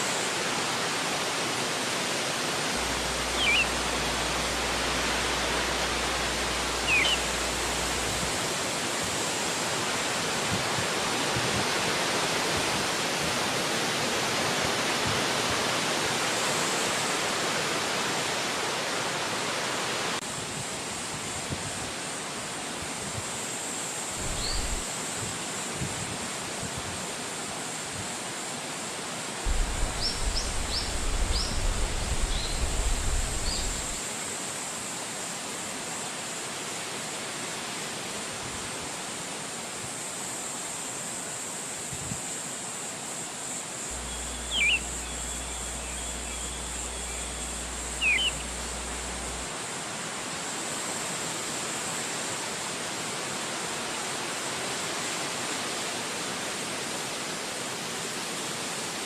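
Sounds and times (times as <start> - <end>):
wind blowing through trees: 0.0 - 59.0
low rumble: 2.8 - 8.4, 29.5 - 34.0, 44.0 - 49.5
small birds chirping: 3.3 - 3.9, 6.8 - 7.4, 24.2 - 24.8, 29.5 - 34.0, 44.0 - 49.4.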